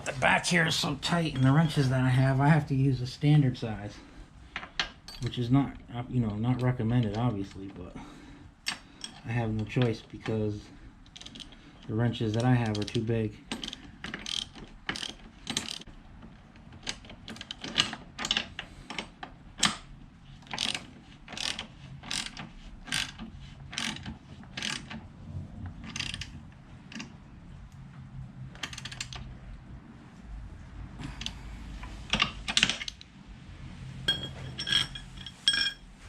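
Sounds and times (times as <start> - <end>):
wrench ratcheting: 12.4 - 15.9, 20.4 - 25.0, 25.8 - 27.1, 28.6 - 29.2.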